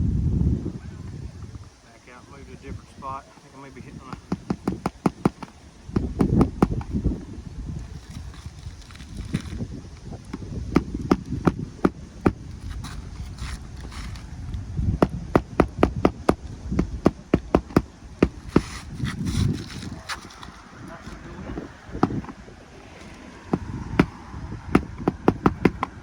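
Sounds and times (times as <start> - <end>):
hammer striking nail: 4.1 - 6.9, 15.0 - 18.8, 22.0 - 22.4, 23.5 - 26.0.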